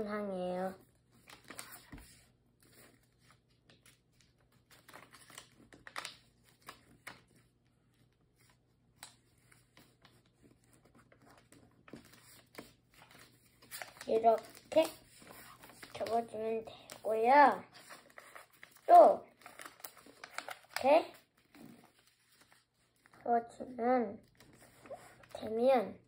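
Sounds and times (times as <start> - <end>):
paper being folded: 0.6 - 25.6.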